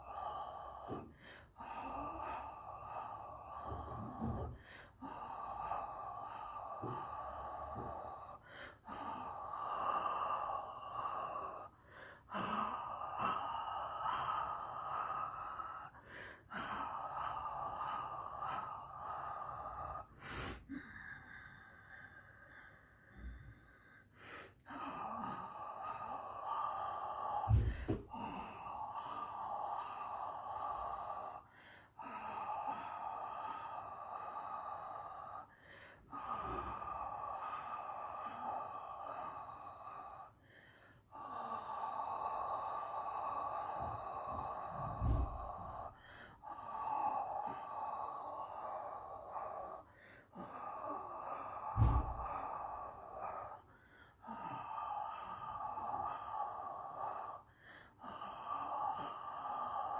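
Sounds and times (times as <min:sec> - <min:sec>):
person breathing out hard: 0:00.0 - 0:59.9
low thumps: 0:27.4 - 0:28.2.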